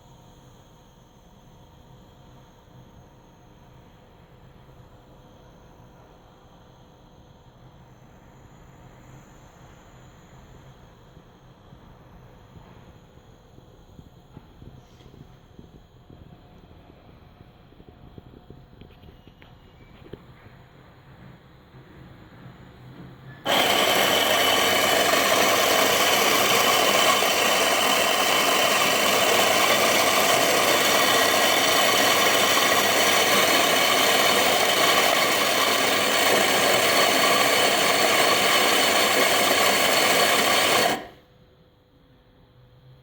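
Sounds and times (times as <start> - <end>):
electric coffee grinder whirring: 23.5 - 41.2.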